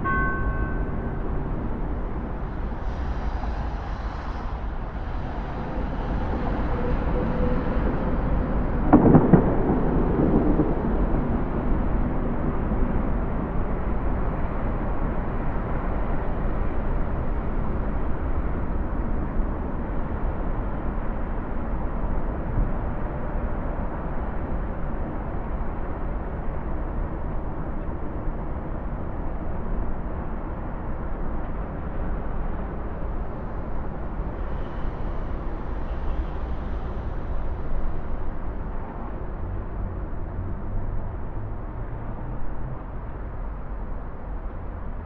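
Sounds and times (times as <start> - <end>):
distant traffic rumble: 0.0 - 45.0
loud low thump: 8.9 - 10.8.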